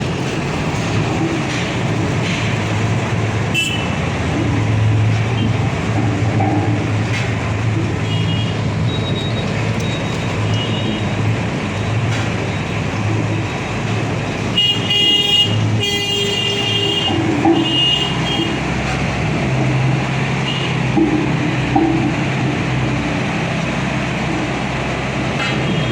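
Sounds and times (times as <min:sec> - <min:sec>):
road roller engine humming: 0:00.0 - 0:25.9
vehicle horns honking: 0:03.5 - 0:04.0, 0:08.0 - 0:09.2, 0:14.5 - 0:18.6, 0:20.4 - 0:20.8.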